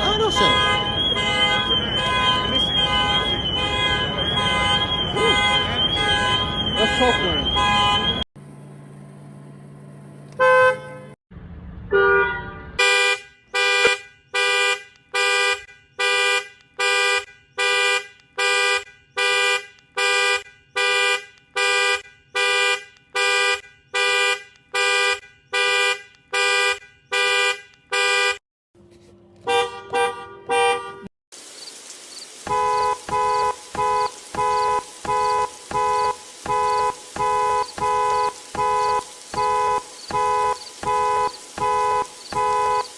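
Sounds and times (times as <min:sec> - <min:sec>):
short car horn honks: 0:00.0 - 0:08.2, 0:10.4 - 0:11.2, 0:11.9 - 0:28.4, 0:29.4 - 0:31.1, 0:32.5 - 0:42.9
car alarm horn pulsing: 0:00.0 - 0:08.3, 0:10.4 - 0:11.2, 0:11.9 - 0:28.4, 0:29.4 - 0:31.1, 0:32.5 - 0:42.9
steady hiss: 0:31.4 - 0:42.9
two-note horn pulsing: 0:32.5 - 0:42.9.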